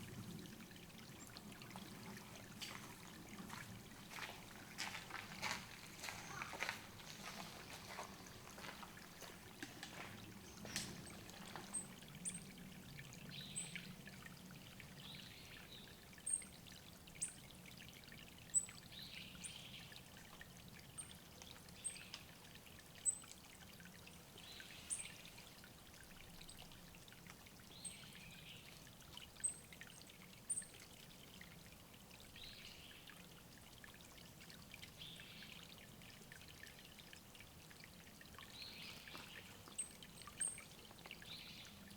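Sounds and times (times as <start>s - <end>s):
faint water trickle: 0.0s - 41.9s
thin high-pitched bird calls: 38.6s - 40.7s.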